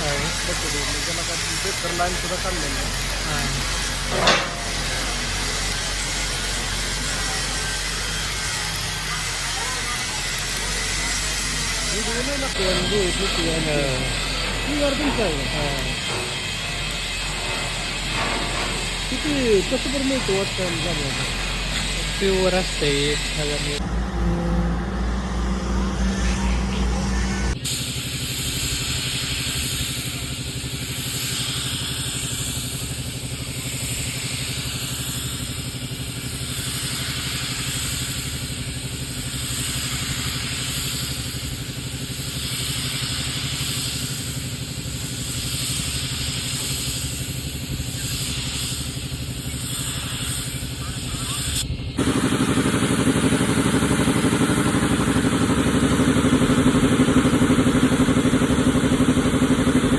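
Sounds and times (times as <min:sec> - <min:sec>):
deeper machine running: 0:00.0 - 0:27.9, 0:51.7 - 0:59.9
motor running with hiss: 0:00.0 - 0:59.9.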